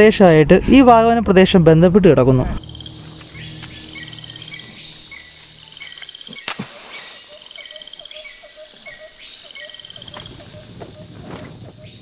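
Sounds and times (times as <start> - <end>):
insect chorus high buzz: 2.6 - 12.0.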